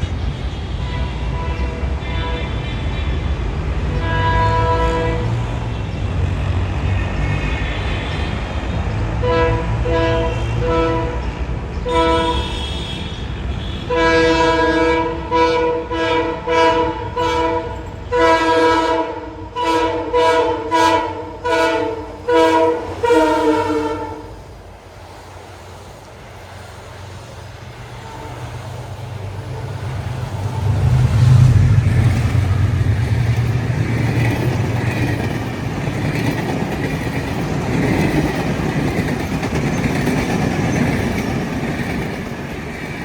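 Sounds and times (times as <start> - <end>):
train horn blasts: 0.0 - 6.0, 6.8 - 24.4, 27.9 - 33.1
locomotive rumble: 0.0 - 43.0.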